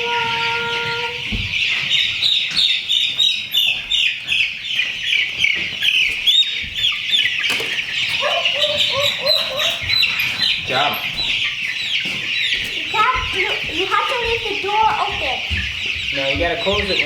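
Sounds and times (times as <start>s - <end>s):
chicks peeping: 0.0s - 17.0s
faint knocks: 5.6s - 17.0s.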